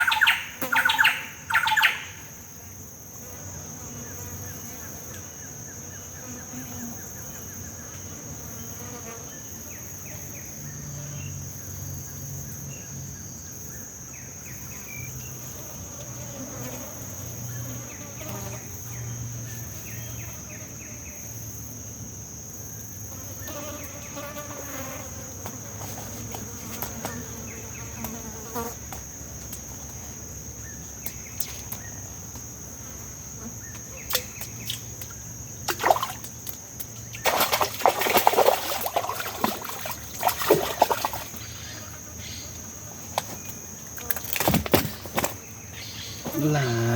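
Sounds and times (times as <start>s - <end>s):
faint pulsed insect calls: 0.0s - 46.9s
insects chirring: 0.0s - 46.9s.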